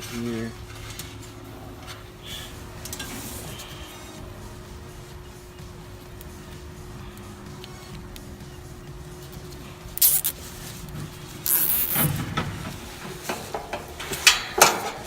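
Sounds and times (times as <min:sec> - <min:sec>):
zip ties ratcheting tight: 0:10.0 - 0:10.4, 0:11.4 - 0:12.1.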